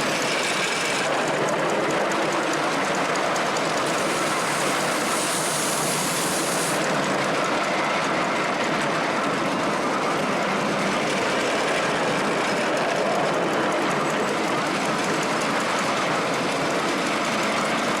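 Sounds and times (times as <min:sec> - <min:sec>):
train wheels rumbling on rails: 0:00.0 - 0:18.0.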